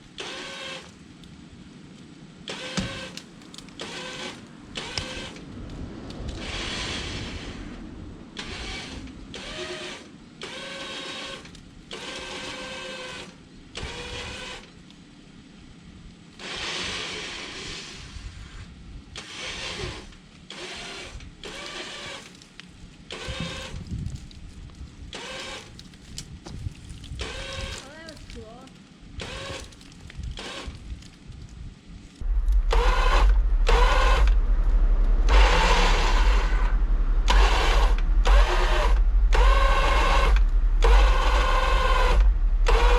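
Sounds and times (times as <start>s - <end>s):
low rumble: 4.5s - 9.5s, 30.1s - 42.9s
electric winch motor whining: 8.4s - 14.7s, 19.2s - 22.3s, 32.4s - 42.9s.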